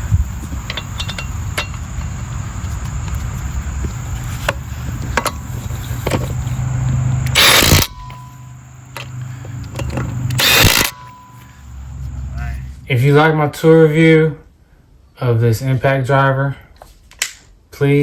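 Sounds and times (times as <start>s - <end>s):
crickets chirping: 0.0s - 14.0s
steady low rumble: 0.0s - 15.2s.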